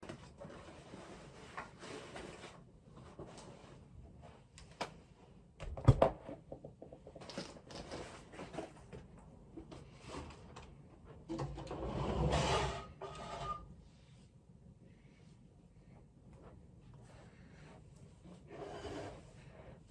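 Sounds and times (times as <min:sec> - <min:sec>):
objects clicking and rustling: 0:07.0 - 0:09.8.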